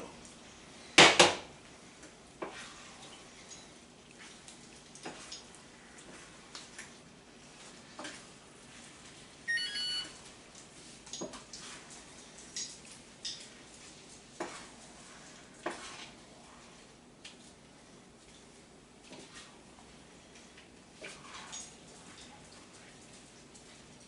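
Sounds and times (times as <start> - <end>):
utensil stirring in a pot: 1.8 - 6.8, 10.8 - 24.0
short electronic chime: 9.5 - 10.1.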